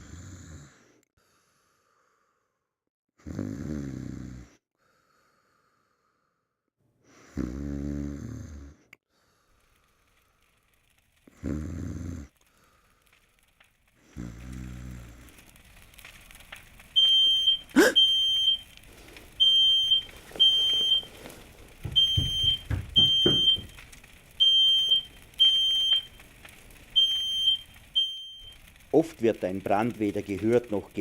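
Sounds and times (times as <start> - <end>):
person snoring: 0.0 - 1.0, 3.2 - 4.6, 7.2 - 8.9, 11.3 - 12.3, 14.1 - 15.4, 17.7 - 18.0
smoke alarm beeping: 17.0 - 26.3, 26.9 - 28.7
low thumps: 18.7 - 25.4.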